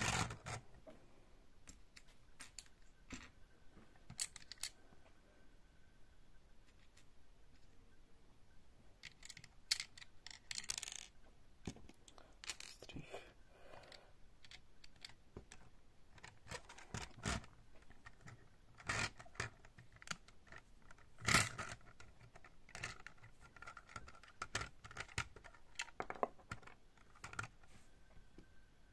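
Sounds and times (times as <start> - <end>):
plastic bricks clicking and rattling: 1.7 - 3.3, 4.1 - 4.7, 9.0 - 12.9, 13.8 - 27.6.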